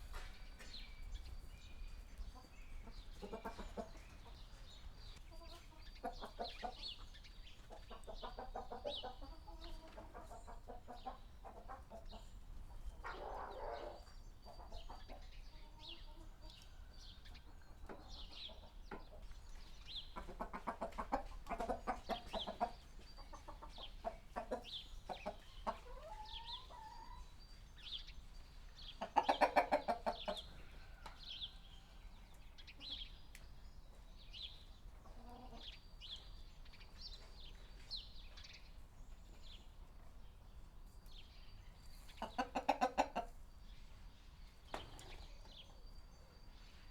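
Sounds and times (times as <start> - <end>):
hens clucking: 2.2 - 16.6, 17.2 - 27.6, 28.7 - 31.2, 34.9 - 35.8, 41.9 - 43.4.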